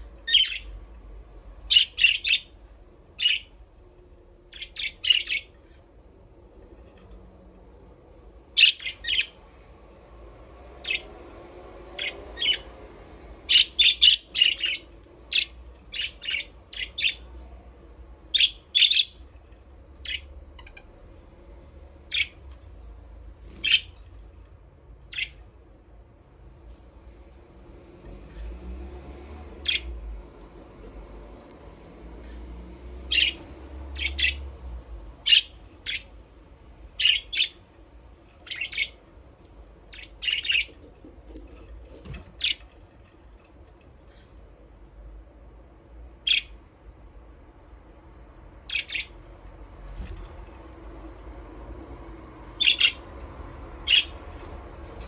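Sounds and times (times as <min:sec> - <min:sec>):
budgerigars chirping and squawking: 0:00.2 - 0:00.8, 0:01.7 - 0:02.6, 0:03.2 - 0:03.6, 0:04.5 - 0:05.9, 0:08.5 - 0:09.4, 0:10.8 - 0:11.2, 0:11.9 - 0:12.7, 0:13.4 - 0:17.4, 0:18.2 - 0:21.1, 0:22.0 - 0:22.7, 0:23.4 - 0:24.2, 0:25.1 - 0:25.4, 0:29.6 - 0:30.0, 0:33.0 - 0:36.3, 0:36.9 - 0:39.2, 0:39.8 - 0:43.1, 0:46.2 - 0:46.6, 0:48.6 - 0:49.3, 0:52.6 - 0:53.2, 0:53.8 - 0:55.0.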